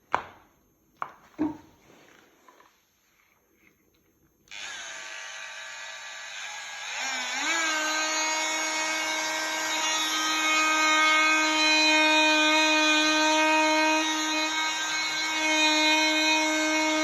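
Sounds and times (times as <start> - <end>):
power tool whining: 4.5 - 17.0.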